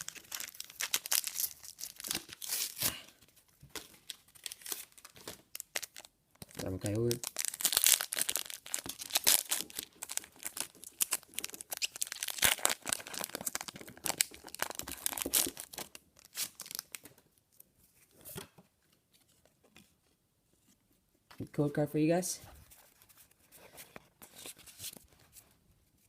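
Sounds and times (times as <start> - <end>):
foil wrapper tearing and crinkling: 0.0 - 3.0, 3.8 - 17.1.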